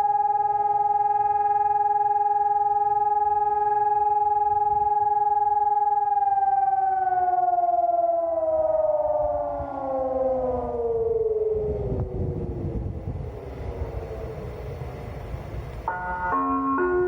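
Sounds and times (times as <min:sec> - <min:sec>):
siren winding down: 0:00.0 - 0:17.0
low rumble: 0:11.3 - 0:15.9.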